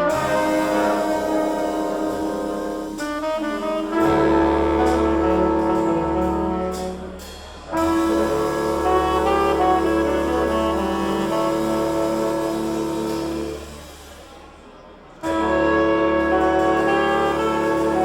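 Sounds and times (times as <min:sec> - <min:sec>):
jazz band playing slow ballad: 0:00.0 - 0:18.0.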